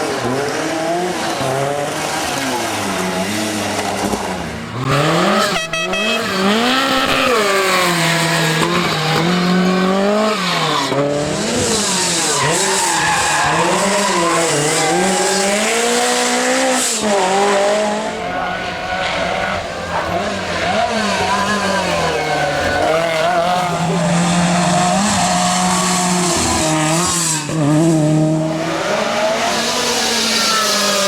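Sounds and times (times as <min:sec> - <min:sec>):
rally car engine accelerating: 0:00.0 - 0:31.0.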